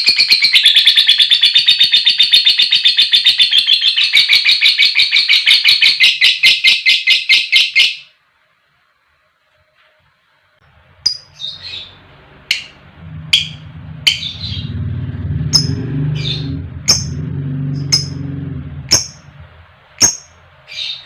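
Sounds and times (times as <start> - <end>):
bird chirping: 0.0 - 8.1, 11.0 - 21.0
low steady hum: 10.6 - 21.0.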